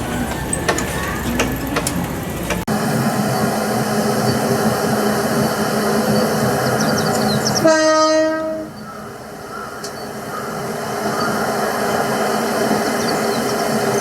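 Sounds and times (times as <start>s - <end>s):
train running rumble: 0.0s - 14.0s
train horn blast: 2.7s - 9.1s.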